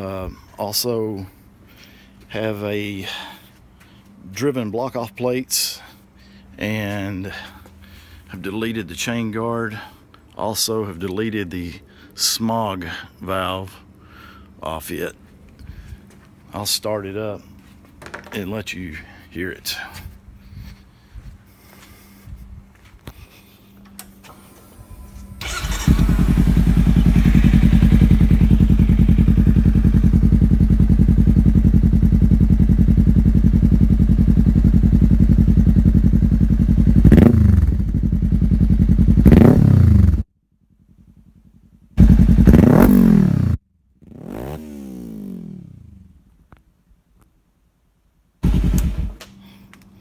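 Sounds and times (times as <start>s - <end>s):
motorcycle engine idling and revving: 24.8s - 46.6s, 48.4s - 49.8s.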